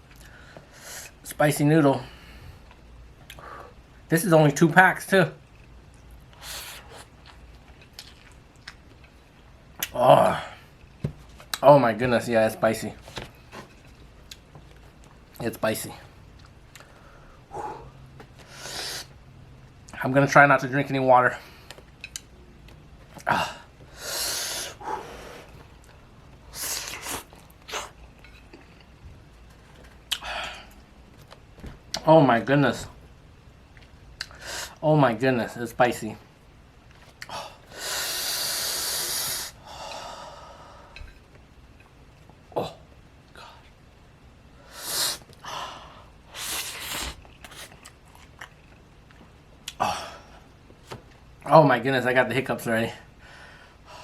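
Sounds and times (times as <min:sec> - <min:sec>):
noodle slurping: 0:46.3 - 0:48.7.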